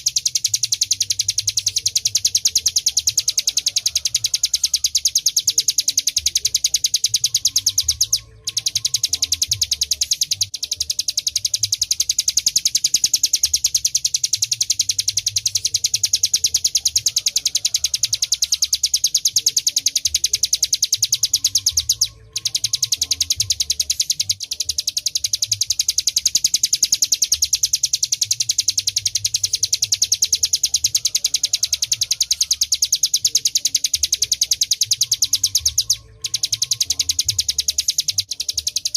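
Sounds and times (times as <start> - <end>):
bird rattling trill: 0.0 - 38.9.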